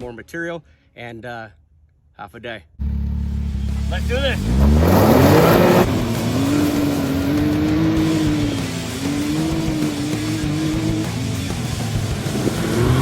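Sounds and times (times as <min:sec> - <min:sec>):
utility vehicle engine revving: 0:02.8 - 0:13.0
loud rush of noise: 0:03.3 - 0:13.0.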